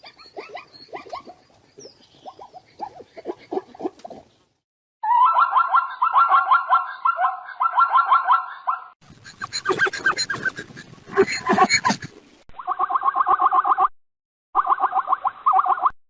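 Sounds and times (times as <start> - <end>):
short repeated animal calls: 8.5 - 13.5
harsh noisy animal call: 9.1 - 12.1.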